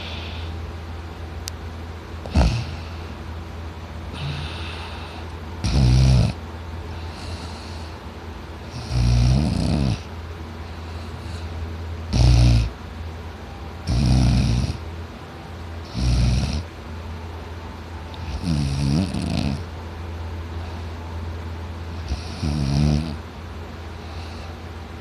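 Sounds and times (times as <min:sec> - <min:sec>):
steady low hum: 0:00.0 - 0:25.0
man snoring loudly: 0:02.3 - 0:02.8, 0:04.1 - 0:04.7, 0:05.6 - 0:06.4, 0:08.7 - 0:10.1, 0:12.1 - 0:12.7, 0:13.9 - 0:14.8, 0:15.9 - 0:16.7, 0:18.2 - 0:19.7, 0:22.0 - 0:23.2.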